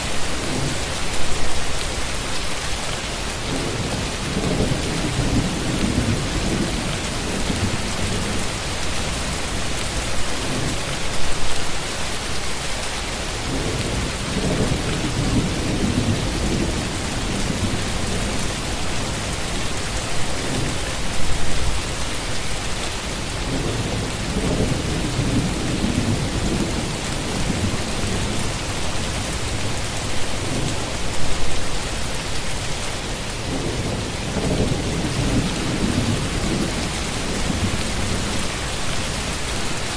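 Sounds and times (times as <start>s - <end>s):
heavy rain: 0.0s - 39.9s
thunder rumbling: 13.5s - 21.9s, 23.4s - 32.2s, 33.4s - 39.9s.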